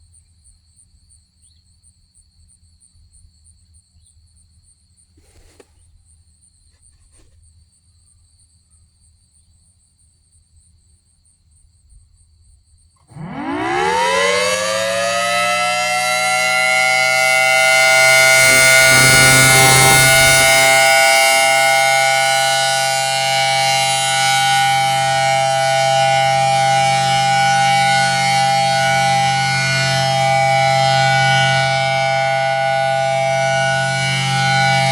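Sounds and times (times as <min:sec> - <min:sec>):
warning siren winding up: 0:13.1 - 0:34.9
faint high-pitched tones: 0:13.2 - 0:25.6.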